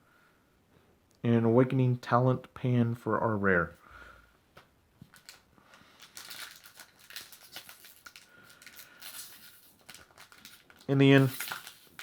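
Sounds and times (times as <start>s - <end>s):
foil wrapper crinkling and tearing: 5.1s - 12.0s.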